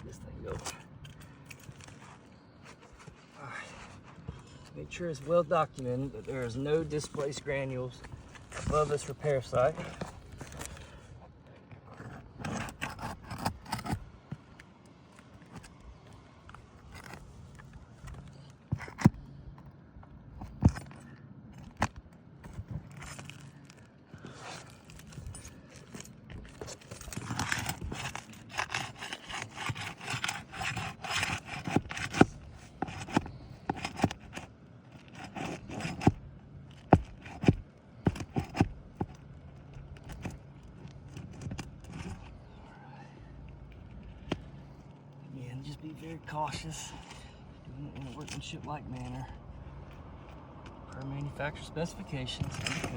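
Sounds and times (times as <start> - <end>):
hand tool scraping shingles: 11.9 - 14.1, 22.5 - 42.5
sharp clicks and knocks: 25.2 - 42.4.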